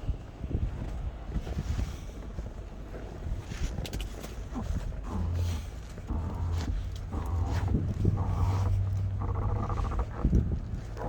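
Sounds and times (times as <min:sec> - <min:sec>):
wind buffeting microphone: 0:00.0 - 0:11.0
faint clicks: 0:06.1 - 0:11.0.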